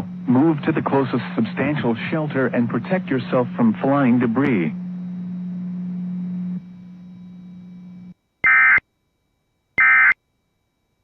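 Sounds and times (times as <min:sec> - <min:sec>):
low steady hum: 0:00.0 - 0:11.0
data tone bursts: 0:08.4 - 0:08.8, 0:09.8 - 0:10.2.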